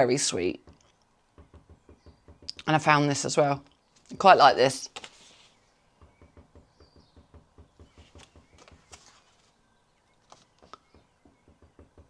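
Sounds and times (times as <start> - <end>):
faint rapid low banging: 0.0 - 3.6, 5.9 - 9.0.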